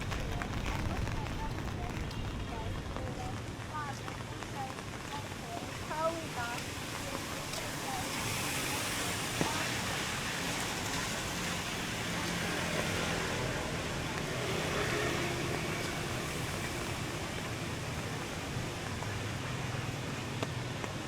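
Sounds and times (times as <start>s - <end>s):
steady hiss of rain: 0.0s - 21.0s
low hum of passing vehicles: 6.2s - 21.0s.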